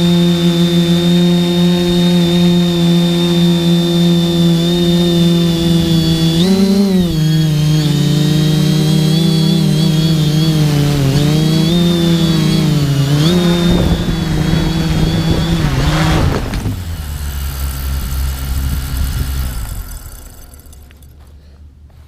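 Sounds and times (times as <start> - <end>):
quadcopter propellers buzzing: 0.0 - 21.7.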